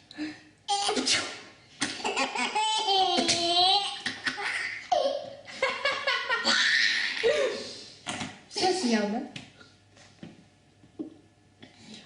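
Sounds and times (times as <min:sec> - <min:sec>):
person sneezing: 0:00.8 - 0:01.5
baby laughing: 0:01.8 - 0:07.5.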